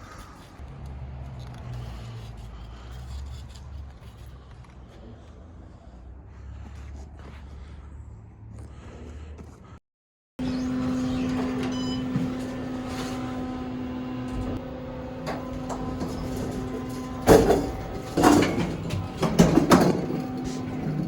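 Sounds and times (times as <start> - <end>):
steady mechanical hum: 10.4 - 21.0
loud knocking and clatter: 14.4 - 21.0.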